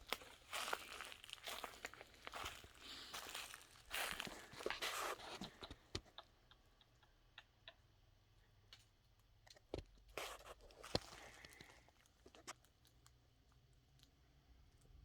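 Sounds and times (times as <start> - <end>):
footsteps crunching on dry leaves: 0.0 - 5.7.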